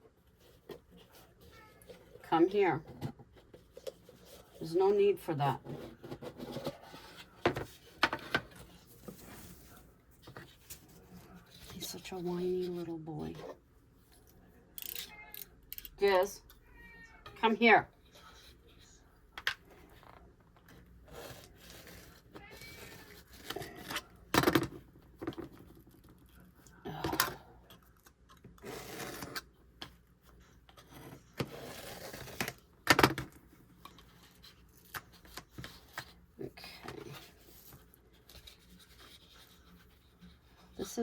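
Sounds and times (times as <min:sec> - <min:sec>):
scraping and rustling: 0:05.5 - 0:13.6.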